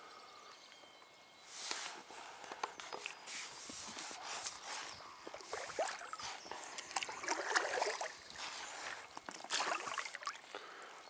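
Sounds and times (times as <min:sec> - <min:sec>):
water trickling drips: 0:05.2 - 0:10.7
kayak paddle splashing in water: 0:05.3 - 0:10.4.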